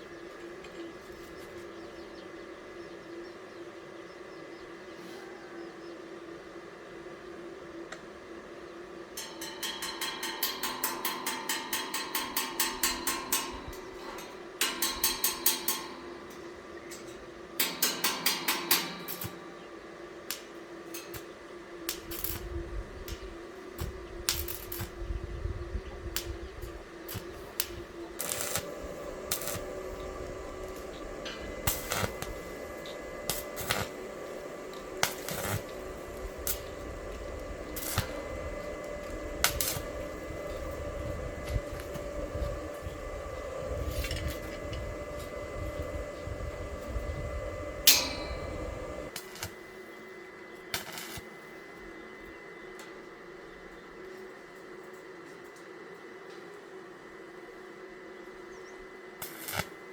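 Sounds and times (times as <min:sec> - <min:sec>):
low machine hum: 0:00.0 - 0:59.9
rapid tapping on metal: 0:09.2 - 0:16.4, 0:17.6 - 0:19.4, 0:47.6 - 0:49.1.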